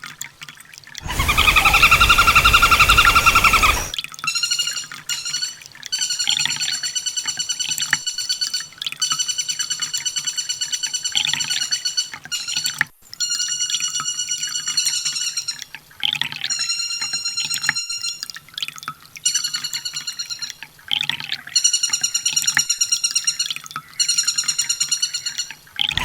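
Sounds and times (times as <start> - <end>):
bird buzzy trills: 1.0 - 4.0, 25.2 - 26.0.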